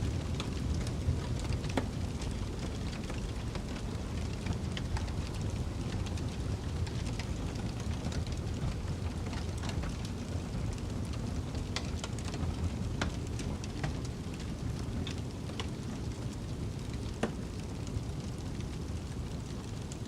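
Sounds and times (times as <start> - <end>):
fire popping: 0.0 - 19.9
wood fire crackling: 0.0 - 20.0.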